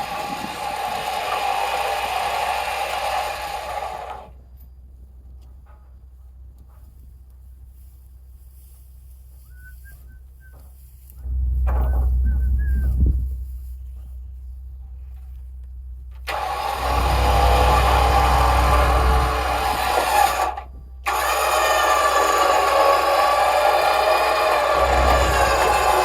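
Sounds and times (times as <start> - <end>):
motor whining: 0.0 - 4.4, 16.1 - 26.0.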